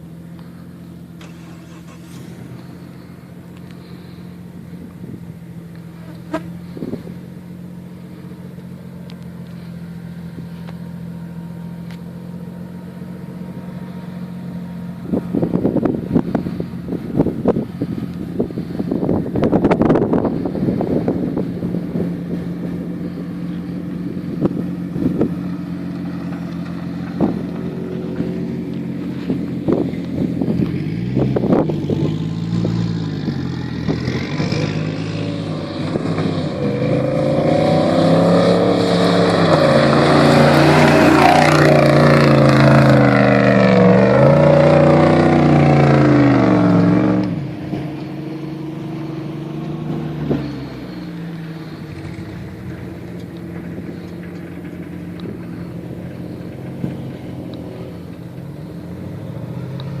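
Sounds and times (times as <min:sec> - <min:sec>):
off-road engine revving: 0:00.0 - 1:00.0.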